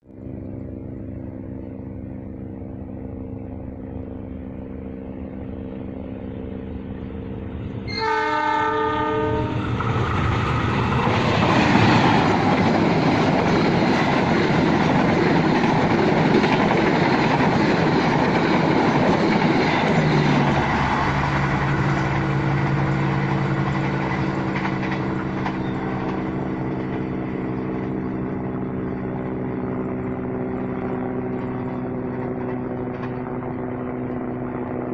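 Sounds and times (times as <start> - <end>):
diesel locomotive engine drone: 0.0 - 34.9
train wheels on rails: 0.1 - 34.9
train horn: 7.8 - 9.7.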